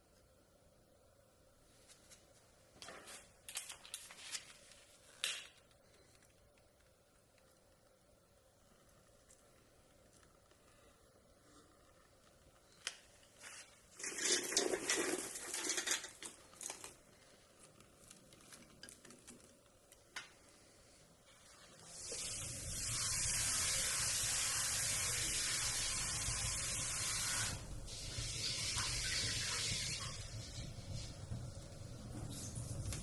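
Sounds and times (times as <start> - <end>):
fire rushing hiss and rumble: 29.3 - 33.0.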